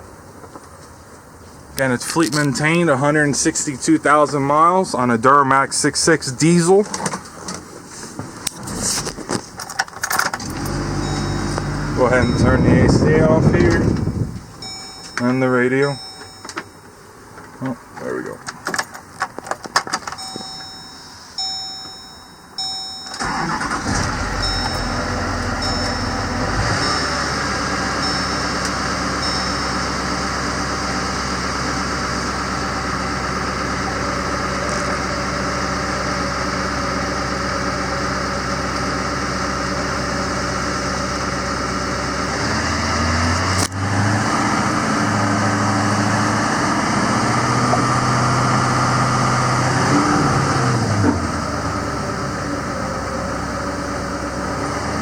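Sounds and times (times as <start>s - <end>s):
diesel engine cranking and idling: 1.8s - 55.0s
dashboard chime beeps: 11.0s - 16.9s, 20.2s - 30.8s.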